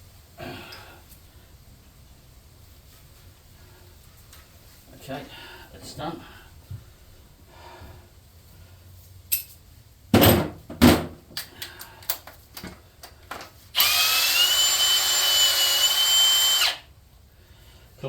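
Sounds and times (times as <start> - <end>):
power tool whirring and whining: 13.8 - 16.9.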